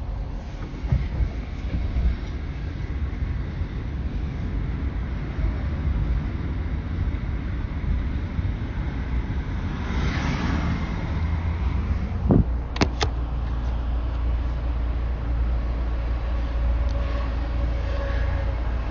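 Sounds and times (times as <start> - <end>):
low vehicle rumble: 0.0 - 18.9
dull thud: 0.7 - 1.9.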